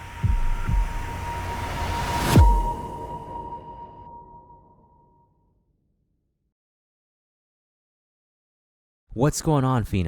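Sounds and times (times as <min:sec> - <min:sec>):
reverberant music wash: 0:00.0 - 0:05.4
high ringing tone: 0:00.4 - 0:05.5.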